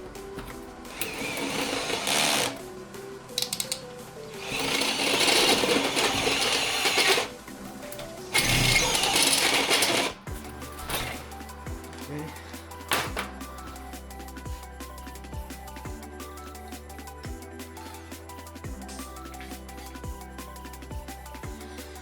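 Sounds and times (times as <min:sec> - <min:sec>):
background music: 0:00.0 - 0:22.0
arc welder crackling and buzzing: 0:00.1 - 0:11.3.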